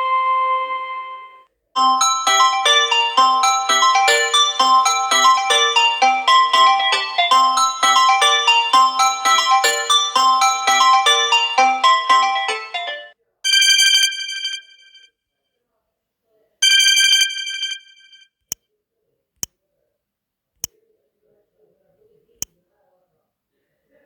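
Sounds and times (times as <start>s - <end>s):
chiming melody: 1.8s - 13.1s
phone ringtone bell ring: 1.8s - 15.0s, 16.6s - 18.2s.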